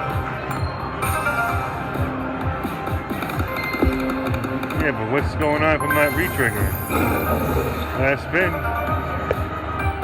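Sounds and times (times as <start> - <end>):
slot machine jingles: 5.7 - 8.9.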